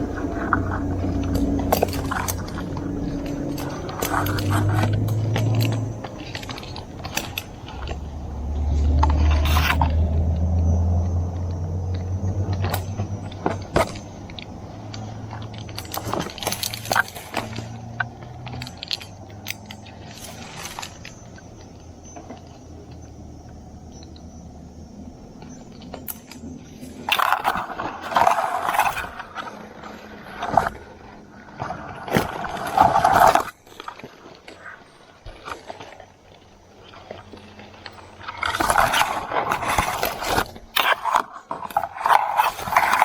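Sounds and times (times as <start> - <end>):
low rumble: 0.0 - 15.7
metal climbing gear clinking: 0.0 - 43.0.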